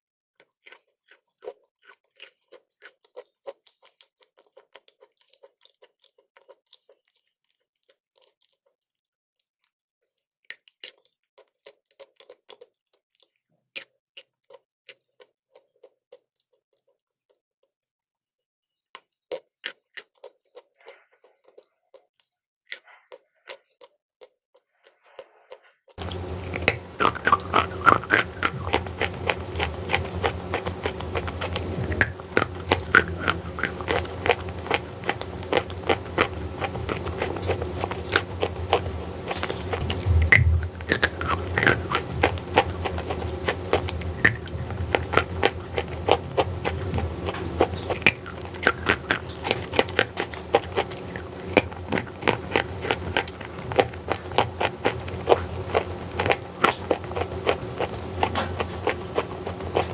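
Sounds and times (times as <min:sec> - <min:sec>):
person chewing crunchy chalk: 0:00.4 - 0:59.9
steady low hum: 0:26.0 - 0:59.9.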